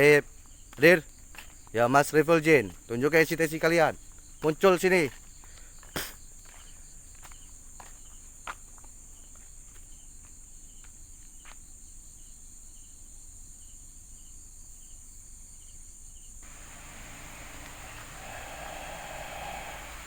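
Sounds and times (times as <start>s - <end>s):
crickets chirping: 0.0s - 20.0s
faint clicks: 16.4s - 20.0s.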